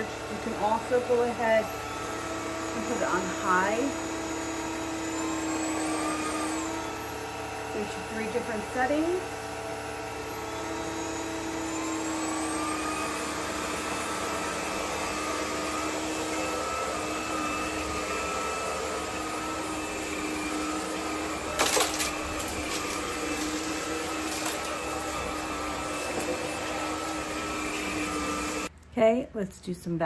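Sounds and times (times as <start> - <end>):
vacuum cleaner motor whine: 0.0 - 28.7.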